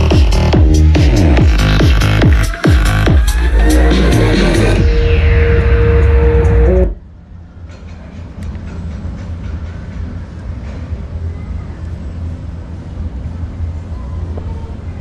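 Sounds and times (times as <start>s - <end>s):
electronic music from a speaker: 0.0s - 7.0s
low outdoor rumble: 0.0s - 15.0s.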